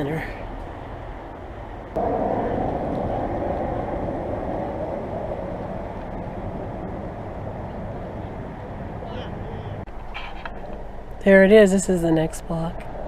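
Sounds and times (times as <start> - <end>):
vehicle road noise: 0.0 - 13.0
low rumble: 0.6 - 10.0.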